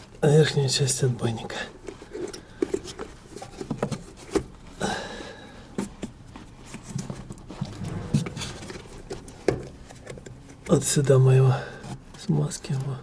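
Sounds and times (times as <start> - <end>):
rubbing scrape: 6.6 - 10.1.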